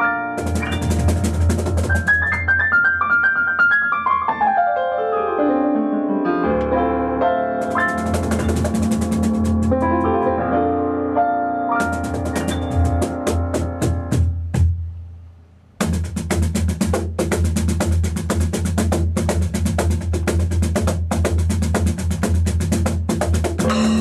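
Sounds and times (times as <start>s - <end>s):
drums and piano duo music: 0.0s - 4.6s, 6.5s - 15.0s, 15.8s - 24.0s
fast driving drumming: 0.4s - 2.7s, 7.6s - 10.1s, 11.8s - 14.8s, 15.8s - 24.0s.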